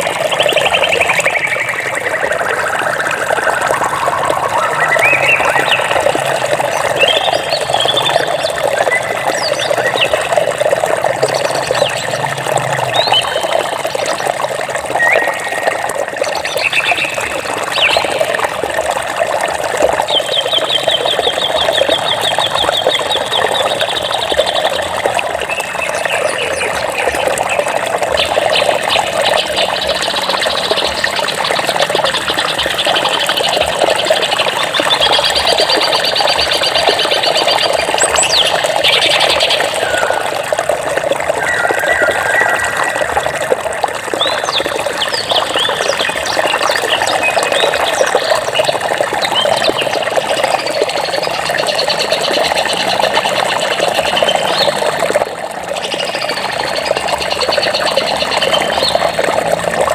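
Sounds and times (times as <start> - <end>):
birds chirping and trilling: 0.0 - 12.2, 12.8 - 14.2, 16.4 - 18.4, 20.0 - 40.4, 41.3 - 43.6, 44.2 - 50.0
flowing water: 0.0 - 59.9.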